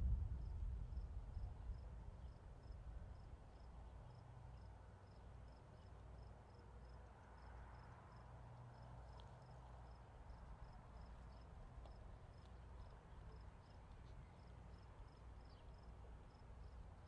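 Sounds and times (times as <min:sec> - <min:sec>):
low steady rumble: 0:00.0 - 0:03.4
cricket chirping: 0:00.4 - 0:17.0.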